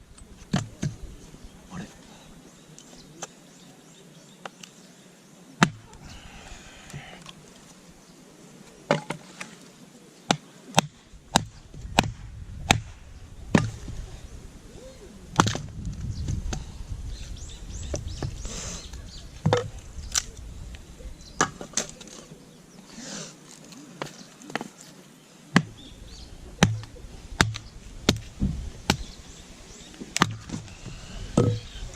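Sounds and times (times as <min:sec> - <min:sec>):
firewood splitting knocks: 0:05.6 - 0:05.9, 0:08.9 - 0:09.2, 0:10.3 - 0:14.0, 0:15.4 - 0:16.6, 0:19.4 - 0:20.3, 0:26.6 - 0:29.1, 0:30.2 - 0:30.7, 0:31.3 - 0:31.8.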